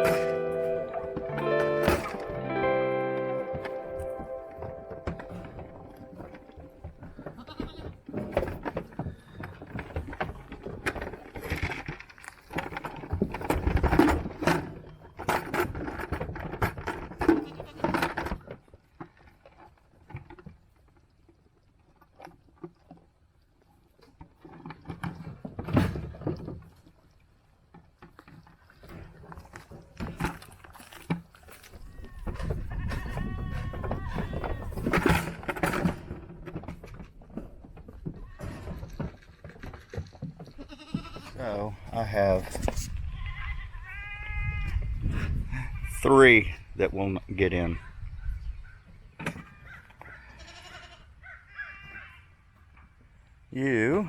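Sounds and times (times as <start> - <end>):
goats bleating: 0.0 - 8.1, 17.4 - 17.9, 31.9 - 34.8, 40.6 - 41.4, 43.1 - 44.8, 50.2 - 52.3
knocks and clatter: 32.2 - 41.4.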